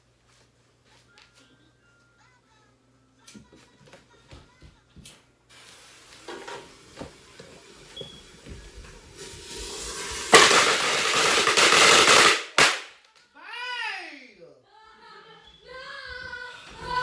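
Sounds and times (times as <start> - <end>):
firecrackers crackling: 5.5 - 13.1
sharp bang: 10.0 - 13.0
person yelling: 13.4 - 14.4.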